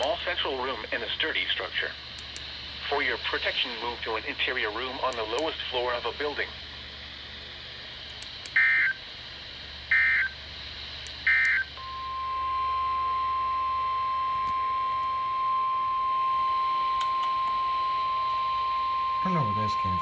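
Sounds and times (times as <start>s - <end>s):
steady warning alarm tone: 8.5s - 9.0s, 9.9s - 10.4s, 11.2s - 20.0s
data tone bursts: 18.8s - 20.0s.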